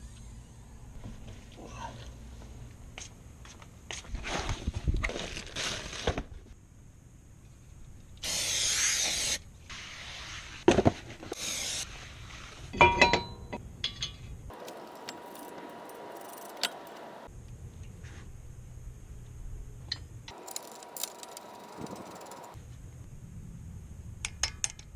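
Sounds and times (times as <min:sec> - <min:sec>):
metal tools clinking: 0:12.8 - 0:17.3, 0:20.3 - 0:22.6.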